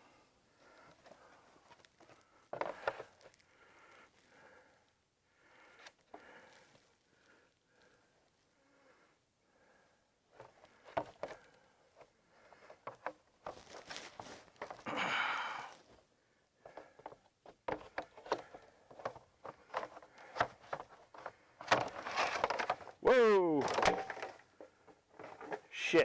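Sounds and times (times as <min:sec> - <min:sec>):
knocks and scrapes on plastic pipe: 0:02.0 - 0:03.4, 0:10.4 - 0:11.5, 0:16.6 - 0:22.9.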